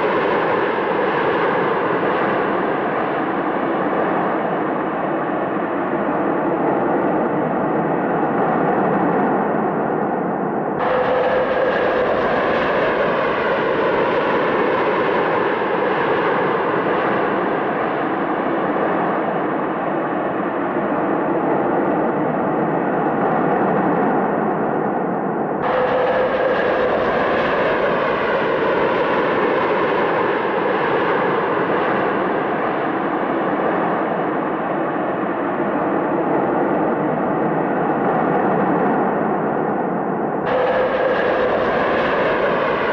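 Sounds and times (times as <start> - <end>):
jet engines running: 39.6 - 42.9.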